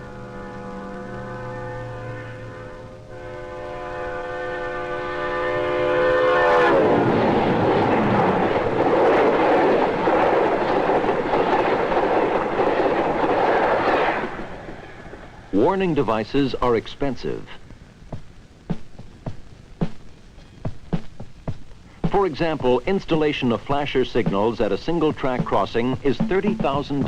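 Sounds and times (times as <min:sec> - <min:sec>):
locomotive air horn: 0:00.0 - 0:07.0
passing train rumble and clatter: 0:00.0 - 0:15.7.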